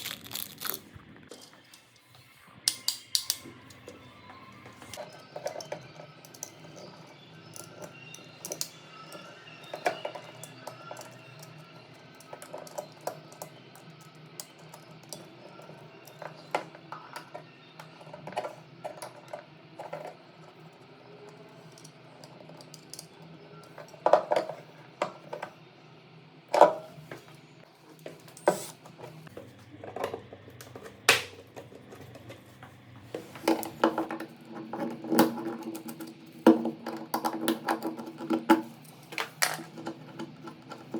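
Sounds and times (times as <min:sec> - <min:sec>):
quiet background music: 0:00.0 - 0:40.9.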